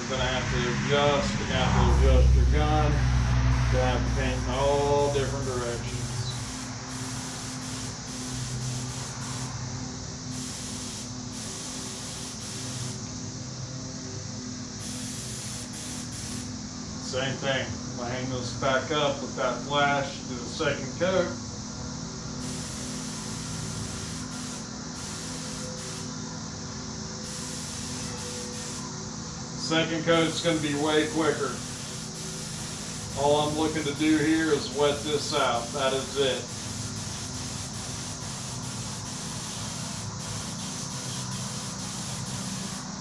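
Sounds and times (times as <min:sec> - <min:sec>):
low hum: 0:00.0 - 0:07.4
steady low hum: 0:00.0 - 0:43.0
spray gun hissing: 0:01.6 - 0:13.2, 0:14.7 - 0:16.7, 0:22.3 - 0:26.3, 0:27.2 - 0:43.0.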